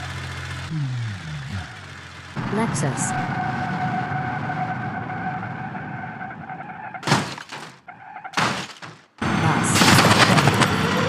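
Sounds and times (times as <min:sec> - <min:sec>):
crashes with shattering: 0:07.0 - 0:09.1, 0:09.7 - 0:10.7.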